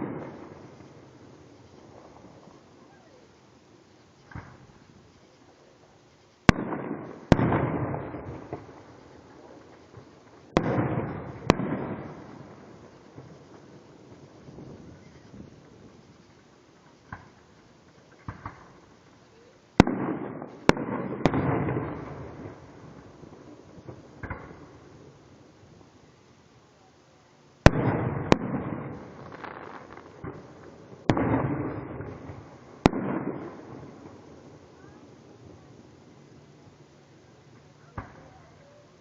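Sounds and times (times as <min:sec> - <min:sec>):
fireworks bangs with echo: 0:00.0 - 0:05.7, 0:06.4 - 0:25.8, 0:27.6 - 0:39.0
faint firework pops: 0:04.2 - 0:05.4, 0:06.4 - 0:24.8, 0:27.6 - 0:35.7, 0:37.5 - 0:38.8.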